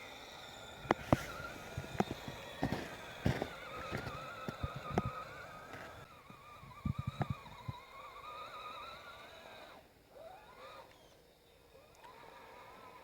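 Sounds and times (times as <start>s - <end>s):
electric motor whining: 0.0s - 13.0s
wheels knocking on terrain: 0.6s - 7.8s.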